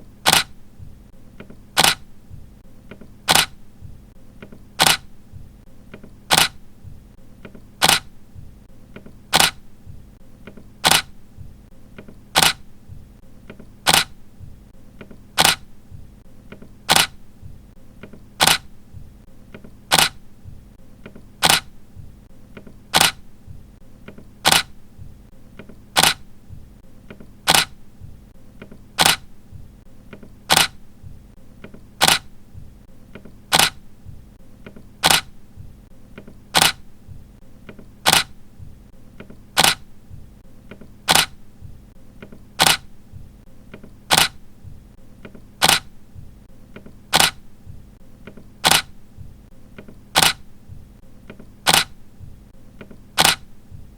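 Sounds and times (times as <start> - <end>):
camera shutter clicking: 0.2 - 0.6, 1.8 - 2.1, 3.3 - 3.6, 4.8 - 5.1, 6.3 - 6.6, 7.8 - 8.1, 9.3 - 9.6, 10.8 - 11.1, 12.3 - 12.6, 13.8 - 14.2, 15.4 - 15.7, 16.9 - 17.2, 18.4 - 18.7, 19.9 - 20.2, 21.4 - 21.7, 22.9 - 23.2, 24.4 - 24.8, 25.9 - 26.2, 27.4 - 27.8, 29.0 - 29.3, 30.5 - 30.8, 32.0 - 32.3, 33.5 - 33.8, 35.0 - 35.3, 36.5 - 36.8, 38.0 - 38.3, 39.6 - 39.8, 41.1 - 41.4, 42.6 - 42.9, 44.1 - 44.4, 45.6 - 45.9, 47.1 - 47.4, 48.6 - 48.9, 50.1 - 50.4, 51.6 - 52.0, 53.2 - 53.4.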